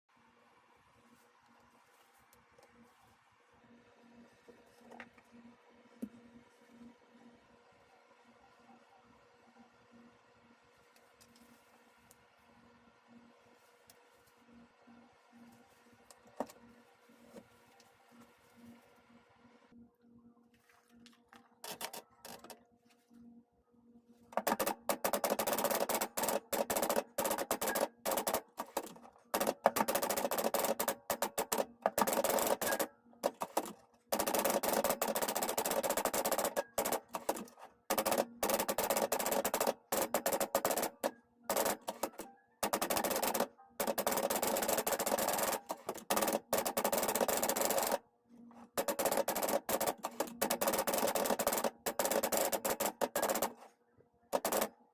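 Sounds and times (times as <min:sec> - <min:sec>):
typewriter keys striking: 0:24.4 - 0:48.0, 0:48.8 - 0:53.6, 0:54.4 - 0:54.7.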